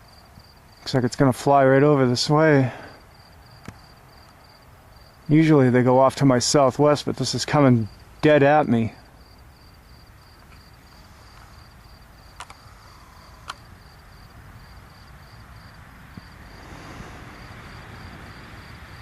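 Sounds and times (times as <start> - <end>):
crickets chirping: 0.0 - 19.0
sharp clicks: 12.3 - 12.7, 13.4 - 13.7
jet-like rushing noise: 16.3 - 19.0.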